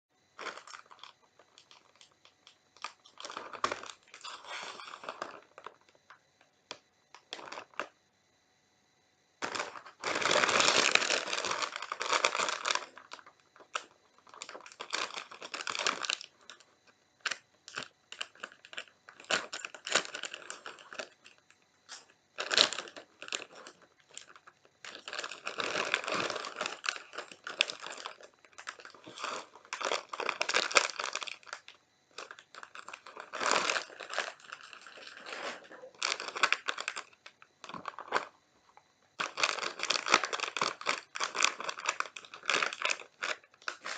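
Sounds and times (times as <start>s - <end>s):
plastic packet crinkling: 0.4s - 5.8s, 9.4s - 16.6s, 17.2s - 38.3s, 39.2s - 43.9s
crunching and chewing: 0.4s - 6.0s, 9.4s - 43.9s.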